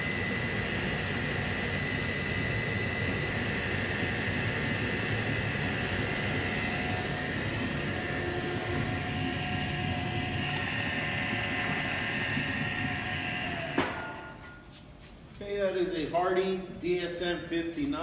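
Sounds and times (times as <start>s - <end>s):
lathe running: 0.0s - 14.3s
coolant pump: 0.0s - 14.5s.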